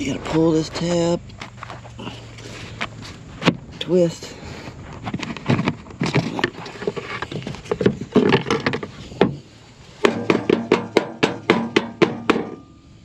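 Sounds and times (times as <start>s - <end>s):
air filter housing clattering: 4.8s - 12.8s
filter knocking on hard surface: 10.0s - 12.5s.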